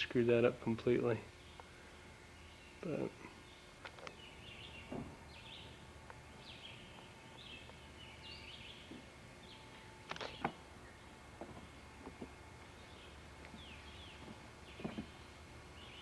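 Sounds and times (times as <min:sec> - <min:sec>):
small birds chirping: 0:00.0 - 0:16.0
sharp knocks: 0:14.2 - 0:15.2.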